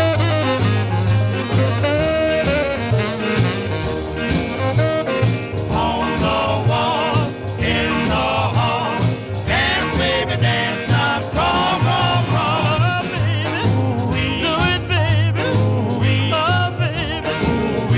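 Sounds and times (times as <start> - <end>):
rhythmic bass beat: 0.0 - 17.9
person singing: 5.7 - 17.9.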